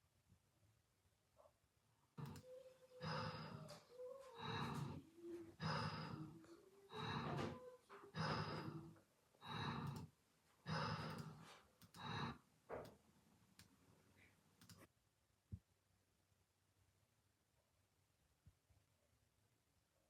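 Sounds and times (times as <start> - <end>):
faint clicks: 2.2 - 5.0, 9.7 - 10.1, 10.7 - 13.8, 14.6 - 14.9
person snoring: 2.2 - 12.4.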